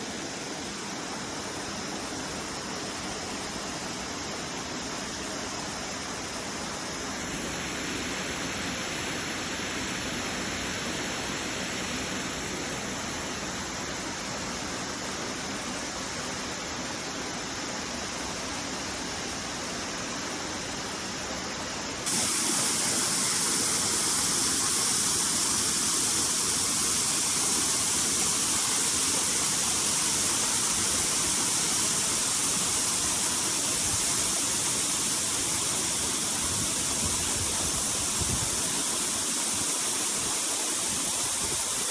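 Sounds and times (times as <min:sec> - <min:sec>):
waterfall rushing: 0:22.1 - 0:41.9.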